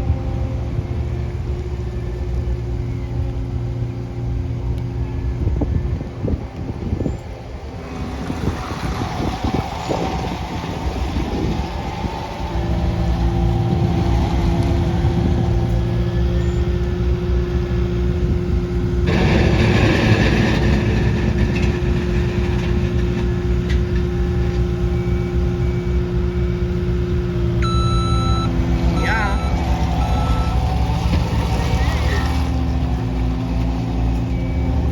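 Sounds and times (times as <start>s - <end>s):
loader engine running: 0.0s - 34.9s
rush of noise: 19.0s - 23.7s.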